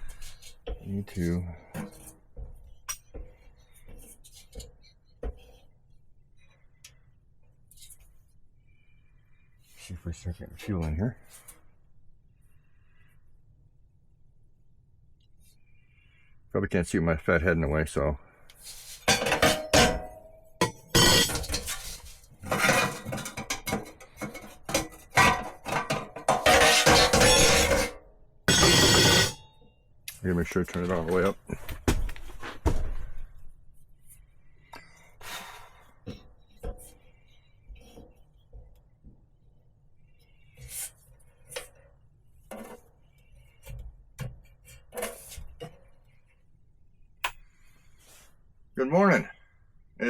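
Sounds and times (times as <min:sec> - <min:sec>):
sheet metal clanking and ringing: 0:19.1 - 0:21.7, 0:24.8 - 0:29.6.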